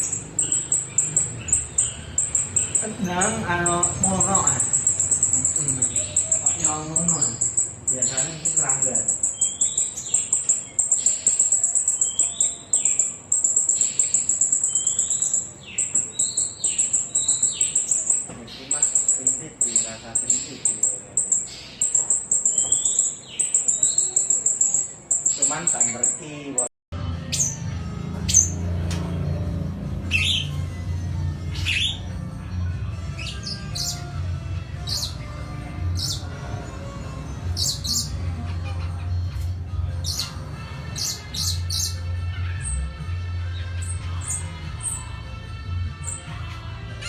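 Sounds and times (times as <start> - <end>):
starling whistled calls: 0.0 - 26.2, 30.1 - 30.6, 31.5 - 32.0, 33.1 - 34.1, 34.8 - 35.2, 37.6 - 38.2, 40.0 - 40.4, 41.0 - 42.9.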